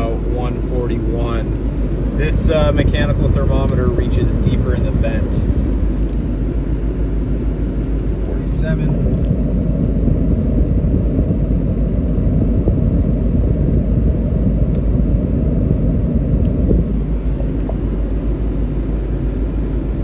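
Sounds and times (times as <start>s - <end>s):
car engine idling: 0.0s - 11.2s, 16.0s - 20.0s
heater blower running: 0.0s - 20.0s
hot air rushing from vent: 0.0s - 20.0s.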